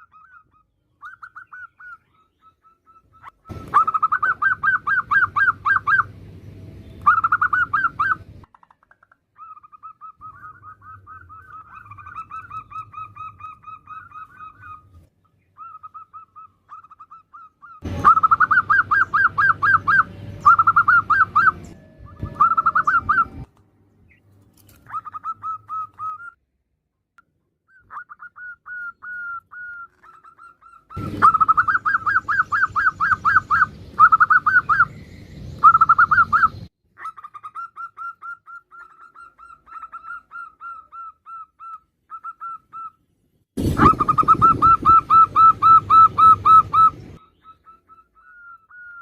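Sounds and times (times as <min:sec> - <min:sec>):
doves cooing trills: 0:00.0 - 0:06.2, 0:07.0 - 0:08.6, 0:09.4 - 0:23.5, 0:24.8 - 0:26.4, 0:27.7 - 0:35.0, 0:35.6 - 0:43.0, 0:43.6 - 0:49.0.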